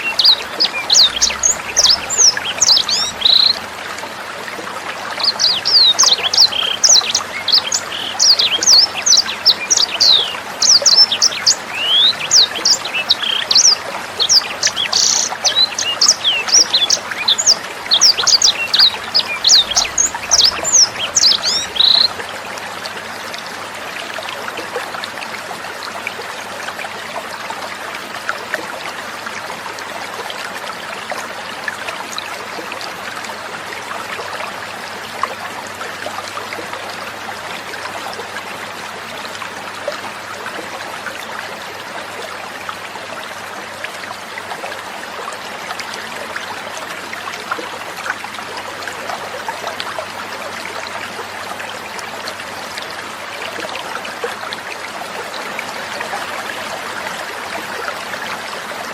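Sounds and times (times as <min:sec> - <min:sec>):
songbird chirping: 0:00.0 - 0:03.6, 0:05.2 - 0:22.2
trickling water: 0:00.0 - 0:58.9.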